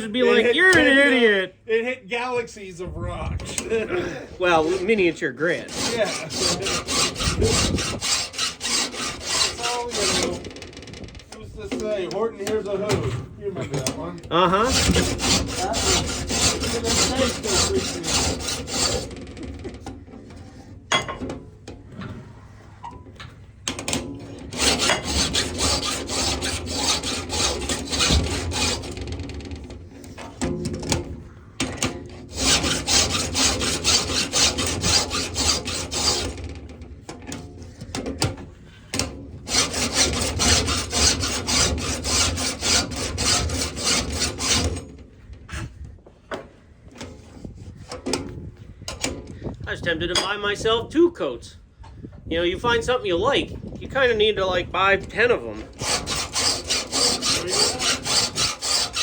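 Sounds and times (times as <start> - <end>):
hand file rasping on saw teeth: 3.4 - 12.6, 14.4 - 20.8, 24.3 - 30.4, 31.8 - 36.5, 39.0 - 45.7, 55.7 - 59.0.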